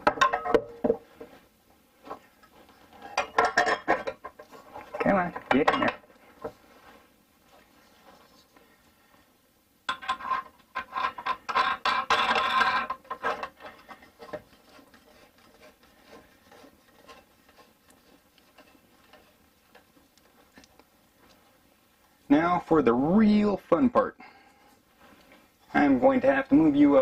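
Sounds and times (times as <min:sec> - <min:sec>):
clattering of building materials: 0:00.0 - 0:07.0, 0:09.9 - 0:17.8.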